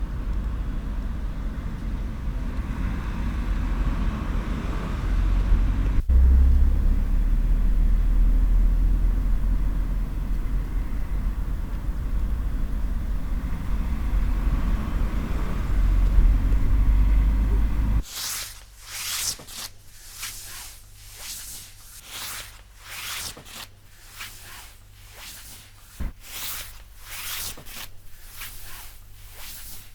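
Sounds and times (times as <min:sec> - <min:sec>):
loud low rumble: 0:00.0 - 0:18.0
cloth rustling: 0:18.0 - 0:29.9.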